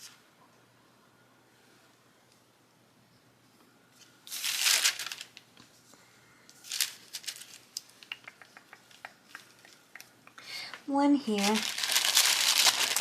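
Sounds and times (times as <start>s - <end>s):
sticker sheet crinkling: 4.3s - 5.4s, 6.6s - 8.0s, 11.3s - 13.0s.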